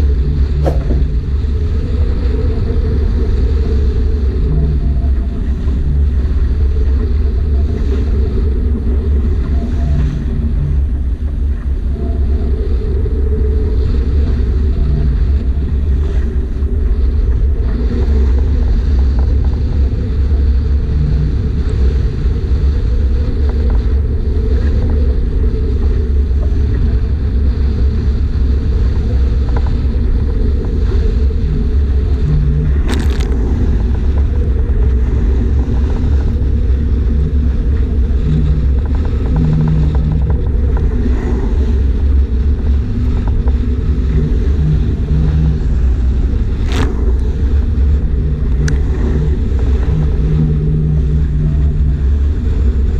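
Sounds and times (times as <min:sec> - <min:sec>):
wind buffeting microphone: 0:00.0 - 0:52.9.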